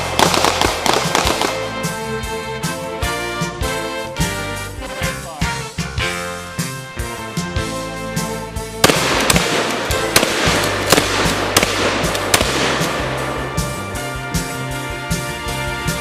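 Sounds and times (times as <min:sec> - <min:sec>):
sharp cracks and crashes: 0:00.0 - 0:01.8, 0:08.8 - 0:14.0
upbeat brass band music: 0:00.0 - 0:16.0.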